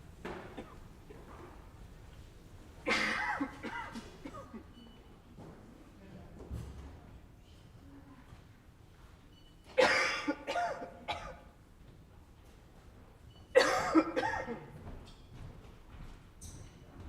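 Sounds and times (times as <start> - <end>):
man coughing: 2.9 - 4.7, 9.8 - 11.5, 13.6 - 14.7.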